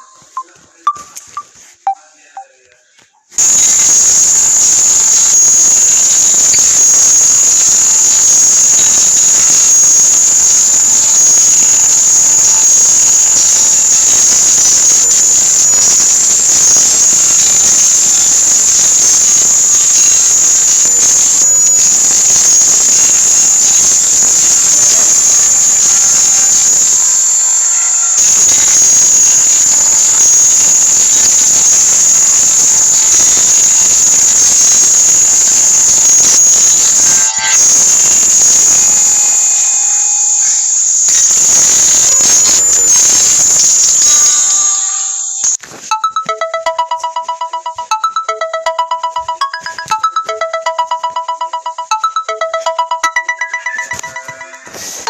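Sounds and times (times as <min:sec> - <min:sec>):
phone ringtone notes: 0:00.0 - 0:02.0, 0:45.9 - 0:55.0
loud static hiss: 0:03.4 - 0:45.9.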